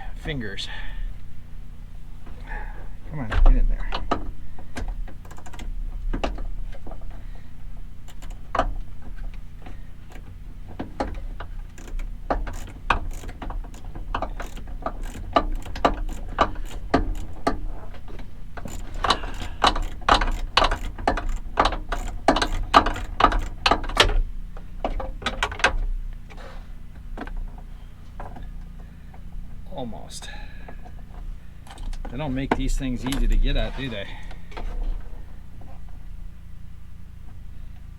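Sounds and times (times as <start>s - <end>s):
ratchet wrench clicking: 3.8s - 6.4s, 8.0s - 8.7s, 11.0s - 24.2s.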